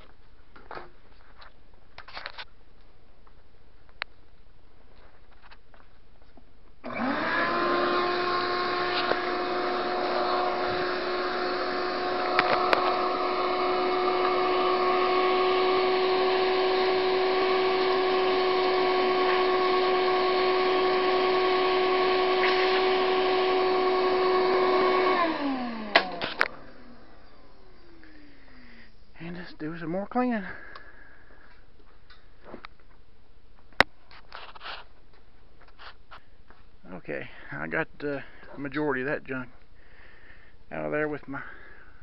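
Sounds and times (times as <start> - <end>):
motor winding down: 6.8 - 28.4
shop vac running: 6.8 - 31.5.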